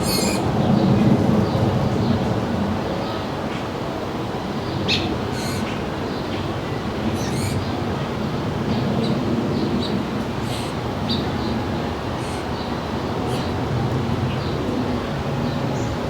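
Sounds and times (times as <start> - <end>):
small birds chirping: 0.0 - 0.8, 4.9 - 6.4, 7.0 - 7.8, 8.7 - 13.6.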